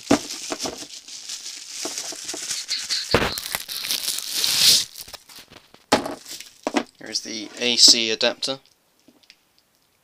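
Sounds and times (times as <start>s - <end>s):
plastic packaging crinkling: 0.0s - 6.6s.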